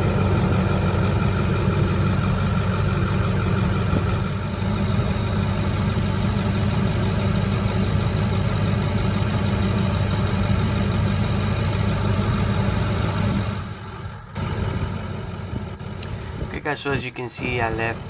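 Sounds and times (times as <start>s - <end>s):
diesel engine idling: 0.0s - 18.0s.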